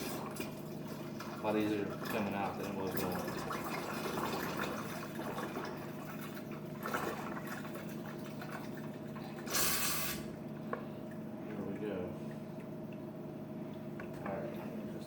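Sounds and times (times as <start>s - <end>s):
short hiss: 9.5s - 10.3s.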